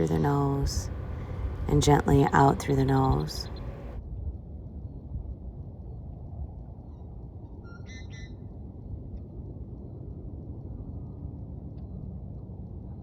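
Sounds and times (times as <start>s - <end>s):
low outdoor rumble: 0.0s - 4.0s.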